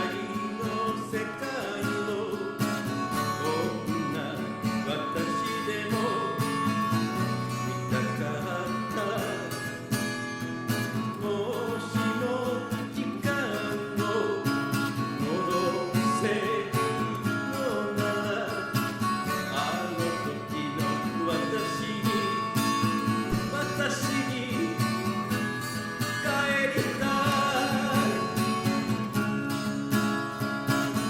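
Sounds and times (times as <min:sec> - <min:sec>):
acoustic guitar: 0:00.0 - 0:31.0.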